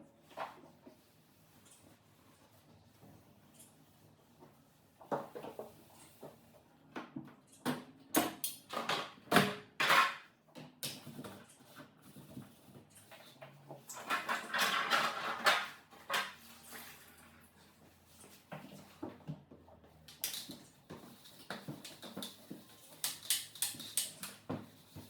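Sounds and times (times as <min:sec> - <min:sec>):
fridge parts and ice clattering: 0:12.5 - 0:17.5.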